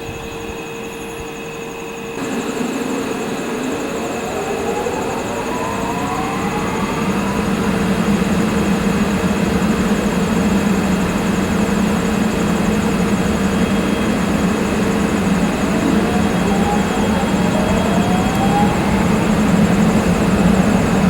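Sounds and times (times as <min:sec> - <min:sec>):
electric locomotive hum and whine: 0:00.0 - 0:21.0.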